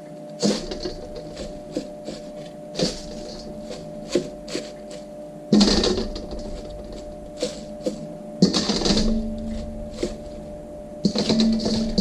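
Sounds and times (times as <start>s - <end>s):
food processor chopping: 0.4s - 5.0s
knocks and clicks: 0.4s - 12.0s.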